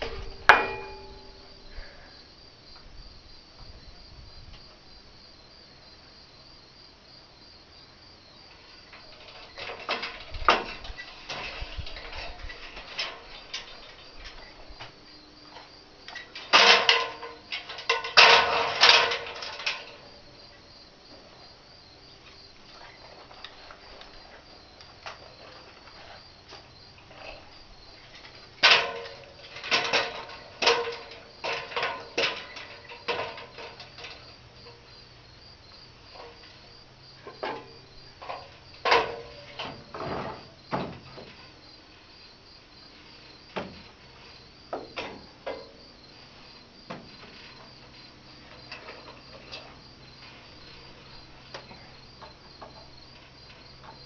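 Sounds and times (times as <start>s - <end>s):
crickets chirping: 0.0s - 54.0s
knocking and clattering: 16.1s - 20.0s, 28.2s - 34.8s, 37.2s - 41.4s.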